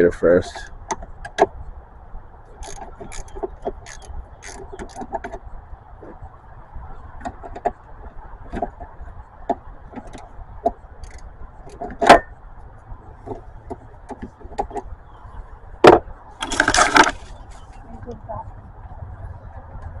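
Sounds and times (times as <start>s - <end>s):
ratchet clicking: 2.6s - 5.1s, 11.0s - 11.8s.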